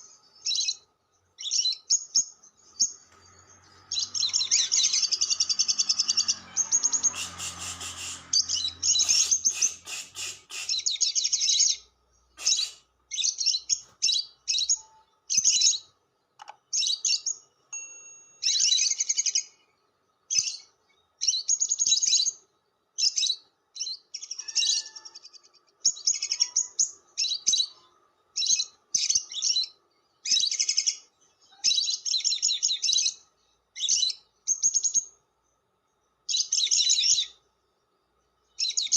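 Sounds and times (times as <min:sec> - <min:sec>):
lovebird chattering shrill chirps: 0:01.4 - 0:11.8, 0:12.4 - 0:15.8, 0:18.0 - 0:19.6, 0:23.0 - 0:27.8, 0:36.3 - 0:37.4.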